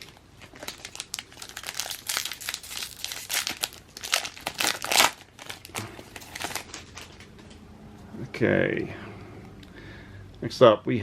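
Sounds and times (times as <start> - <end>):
foil wrapper crinkling and tearing: 0.0 - 7.3.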